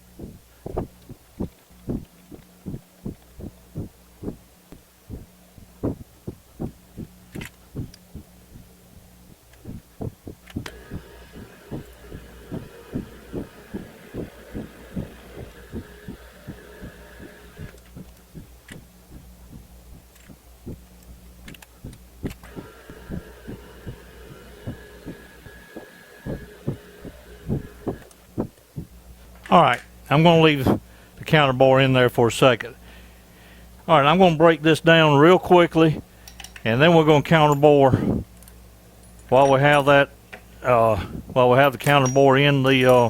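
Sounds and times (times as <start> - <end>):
high cutting whine: 0.0 - 21.2, 21.8 - 28.9
regular thumps: 0.0 - 29.8
milling machine humming: 0.1 - 21.2, 21.8 - 28.9.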